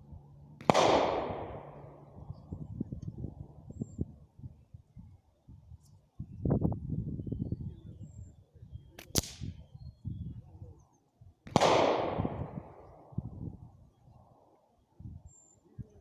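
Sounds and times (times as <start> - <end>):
rifle shots: 0.6 - 2.1, 11.5 - 12.7.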